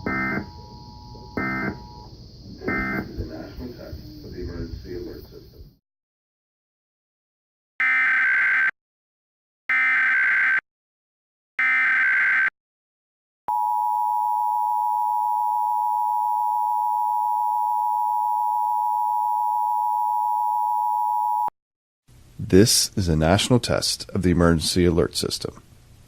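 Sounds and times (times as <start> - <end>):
two-tone attention signal: 0.0 - 3.1
data burst tones: 0.0 - 3.4.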